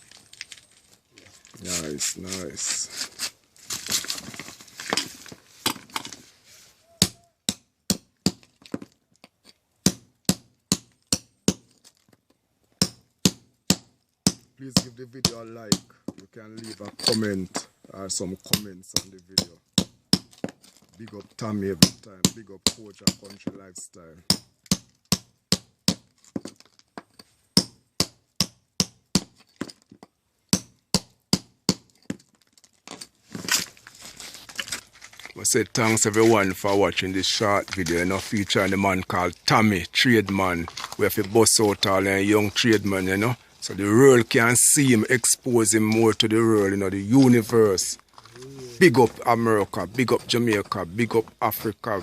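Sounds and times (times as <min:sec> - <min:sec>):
hand tool striking hard material: 0:18.4 - 0:32.3.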